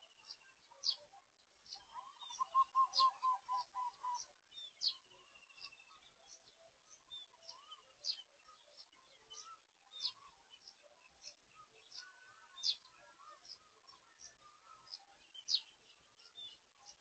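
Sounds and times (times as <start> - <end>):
wild birds chirping: 0.0 - 17.0
bird trill: 1.8 - 13.6.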